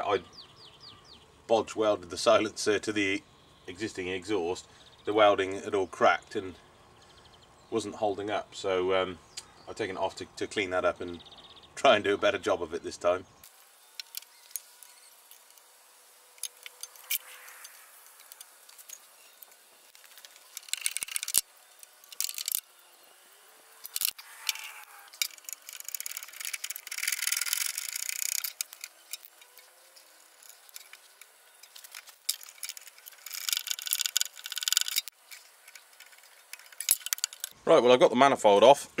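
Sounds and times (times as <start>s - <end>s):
metallic clicks of spanner and bolts: 16.4s - 22.7s, 23.8s - 37.6s.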